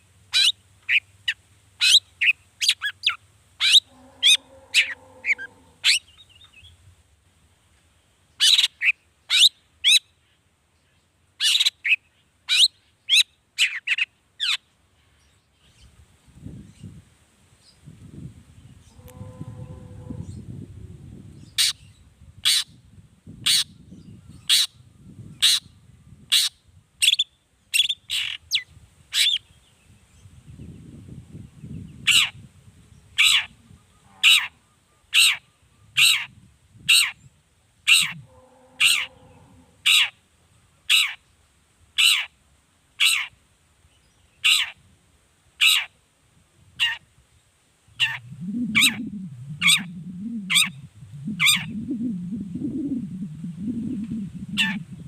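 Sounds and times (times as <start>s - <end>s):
bird giving harsh downward calls: 3.6s - 6.0s, 48.0s - 55.0s.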